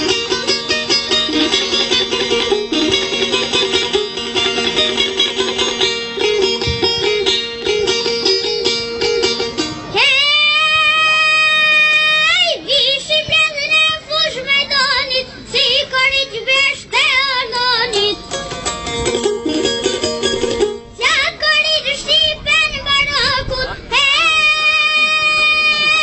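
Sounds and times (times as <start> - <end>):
instrumental backing music: 0.0 - 10.6, 13.1 - 26.0
boy singing: 9.9 - 18.2, 21.0 - 26.0.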